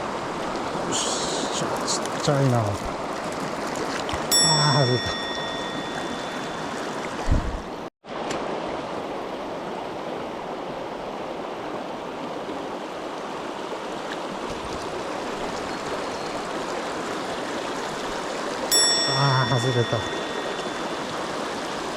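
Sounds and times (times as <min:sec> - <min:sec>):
stream rushing over rocks: 0:00.0 - 0:21.9
low thump: 0:07.2 - 0:07.6.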